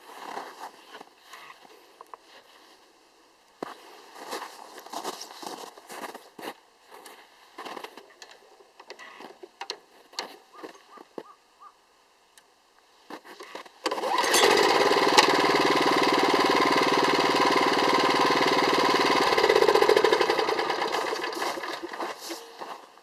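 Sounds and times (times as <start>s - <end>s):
snowblower engine starting and running: 13.9s - 22.8s.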